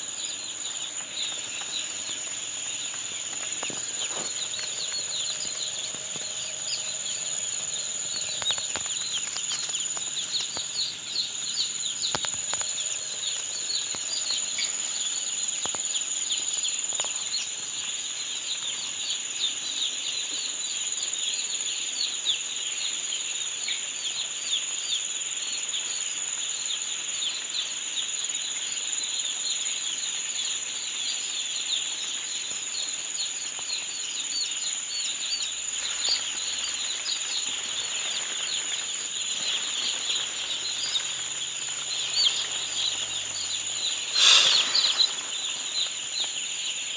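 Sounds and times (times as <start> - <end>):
chicks peeping: 0.0 - 20.6, 29.9 - 46.9.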